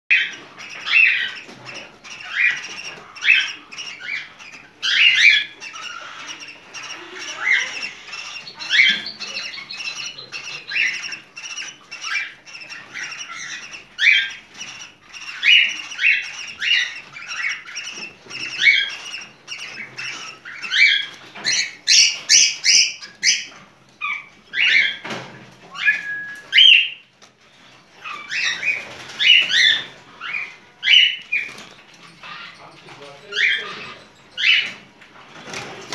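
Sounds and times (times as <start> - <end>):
cockatiel chirping squawks: 0.1 - 25.1, 28.0 - 31.5.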